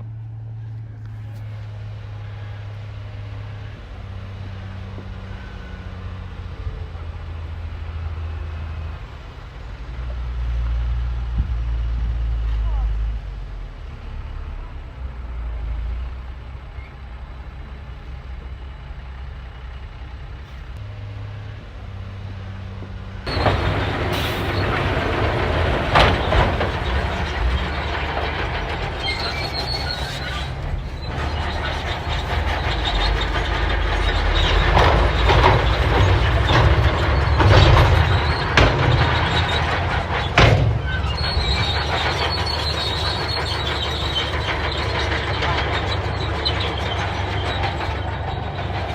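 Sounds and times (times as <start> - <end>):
diesel engine running low: 0.0 - 48.9
steel tracks clanking and squealing: 1.1 - 11.2, 23.2 - 48.9
metal knocks: 23.3 - 48.9.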